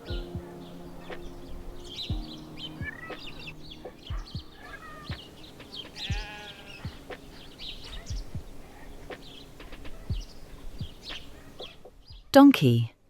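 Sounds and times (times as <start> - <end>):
birds chirping: 0.0 - 12.4
faint steady thud: 2.1 - 7.3, 8.1 - 12.2
bleat-like animal call: 6.2 - 6.8.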